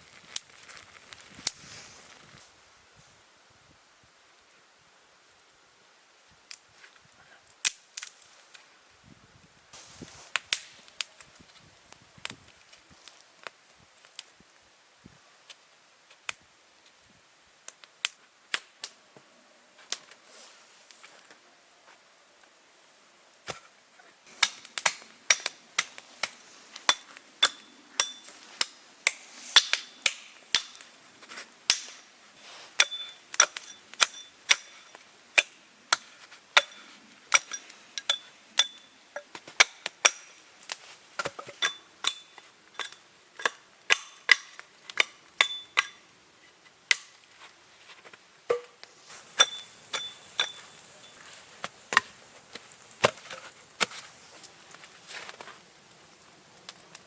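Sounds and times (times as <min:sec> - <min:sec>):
hand tool striking metal: 0:26.9 - 0:30.8, 0:48.5 - 0:51.2.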